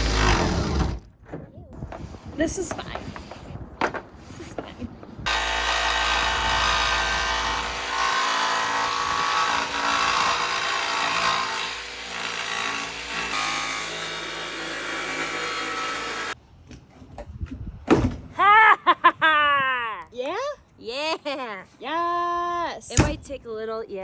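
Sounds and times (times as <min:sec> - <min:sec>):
jigsaw cutting sheet metal: 0:00.0 - 0:01.0, 0:05.3 - 0:16.4.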